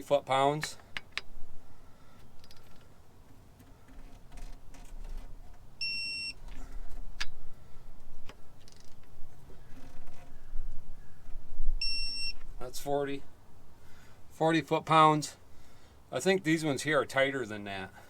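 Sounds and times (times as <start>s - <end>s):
torque wrench beep: 5.8s - 6.4s, 11.8s - 12.4s.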